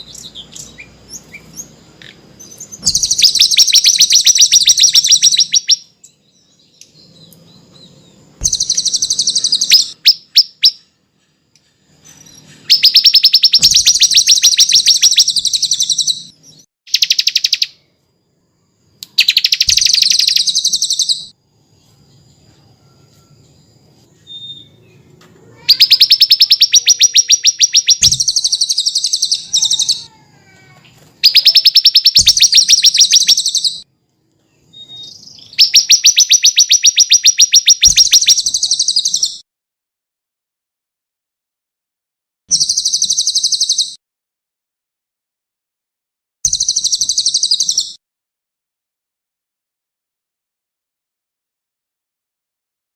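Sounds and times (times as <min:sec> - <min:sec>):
songbird singing high trills: 0:00.0 - 0:17.8, 0:19.0 - 0:30.1, 0:31.2 - 0:33.8, 0:34.6 - 0:39.4, 0:42.5 - 0:44.0, 0:46.5 - 0:48.0.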